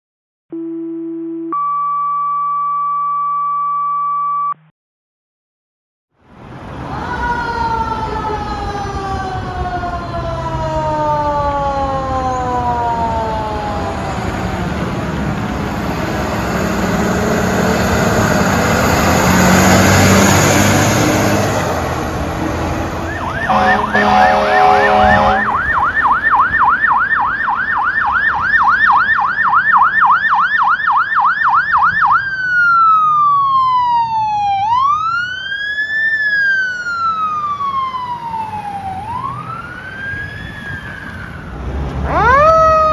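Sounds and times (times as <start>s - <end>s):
fire truck engines: 6.2s - 42.9s
mechanical siren winding down: 22.9s - 29.0s, 31.7s - 42.9s
electronic siren yelping: 23.0s - 41.2s, 42.0s - 42.9s
air horn blasts: 23.1s - 25.9s
steady electronic tone: 23.2s - 26.0s.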